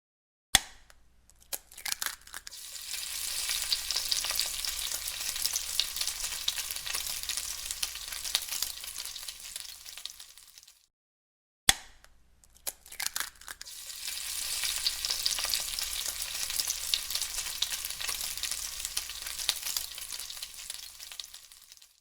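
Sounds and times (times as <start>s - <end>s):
egg sizzling in a hot pan: 2.5s - 10.9s, 13.6s - 22.0s.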